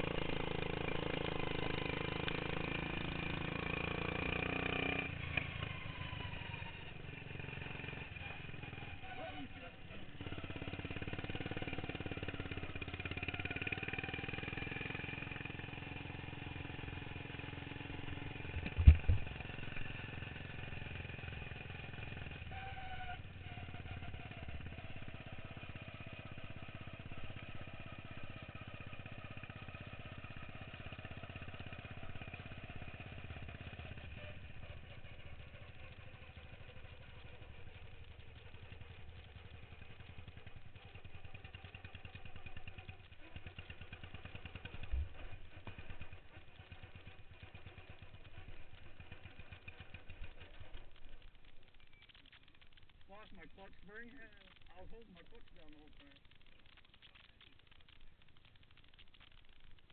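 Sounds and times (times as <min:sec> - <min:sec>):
small engine running: 0:00.0 - 0:59.9
sharp thump: 0:18.6 - 0:19.3.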